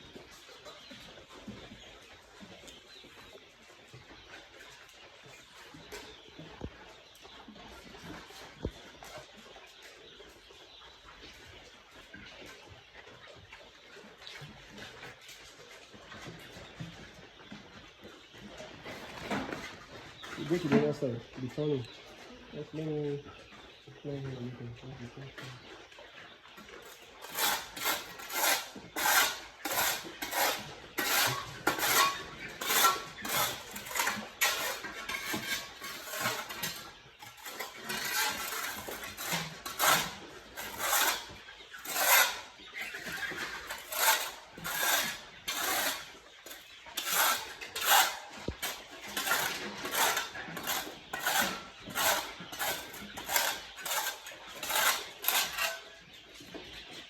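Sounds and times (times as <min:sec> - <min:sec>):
rhythmic scraping strokes: 0:26.8 - 0:56.2.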